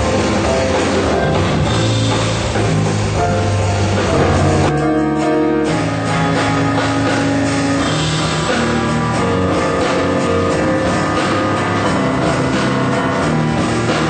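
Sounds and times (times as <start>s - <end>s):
bass: 0.0s - 14.0s
drums: 0.0s - 14.0s
piano: 0.0s - 14.0s.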